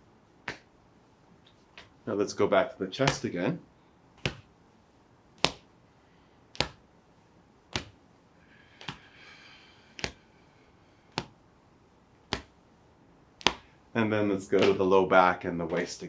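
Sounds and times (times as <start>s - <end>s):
fist tapping on chest: 0.5s - 0.7s, 1.7s - 2.0s, 4.2s - 4.5s, 5.4s - 5.7s, 6.5s - 6.9s, 7.7s - 8.0s, 8.7s - 9.2s, 10.0s - 10.2s, 11.1s - 11.4s, 12.2s - 12.6s, 13.4s - 13.8s.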